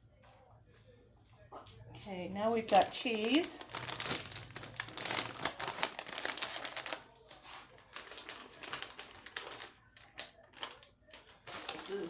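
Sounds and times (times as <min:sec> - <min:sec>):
plastic bag crinkling: 0:02.6 - 0:12.0.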